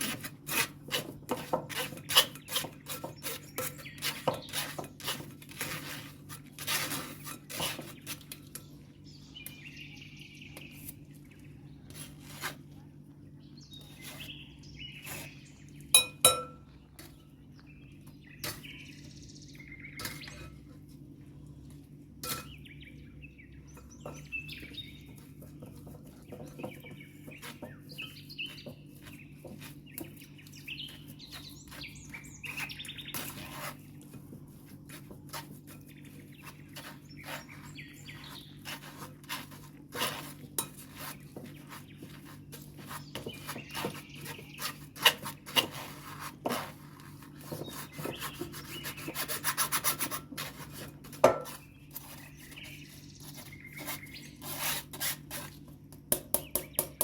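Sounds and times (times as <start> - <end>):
utensils and dishes clinking: 16.0 - 16.6.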